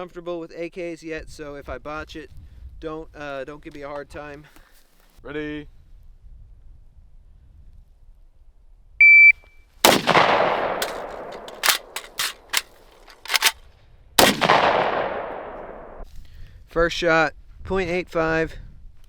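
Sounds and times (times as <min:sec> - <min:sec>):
shot timer beep: 0:09.0 - 0:09.5
rifle shot echoing: 0:09.8 - 0:13.5, 0:14.2 - 0:16.0
metallic clicks of rifle reloading: 0:09.9 - 0:13.6.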